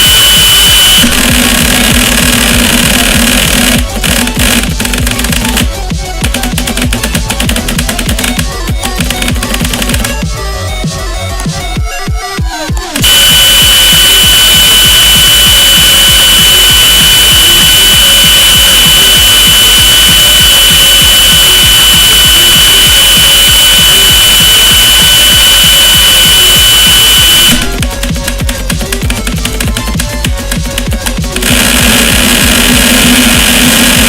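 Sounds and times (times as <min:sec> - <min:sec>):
high-pitched alarm tone: 0:00.0 - 0:05.8, 0:13.0 - 0:27.8, 0:31.3 - 0:34.0
harsh static: 0:00.0 - 0:10.2, 0:13.0 - 0:34.0.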